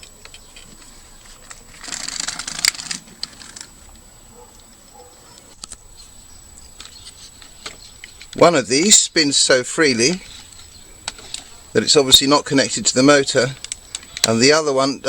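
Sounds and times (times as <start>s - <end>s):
toy truck rattling scrape: 0.0s - 3.8s
small plastic clicks: 0.0s - 4.1s, 5.4s - 5.8s, 13.6s - 14.4s.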